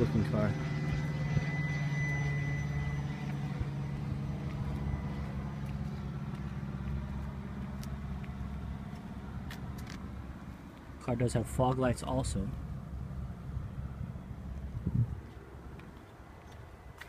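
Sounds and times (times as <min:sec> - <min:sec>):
vehicle engine running: 0:00.0 - 0:11.6.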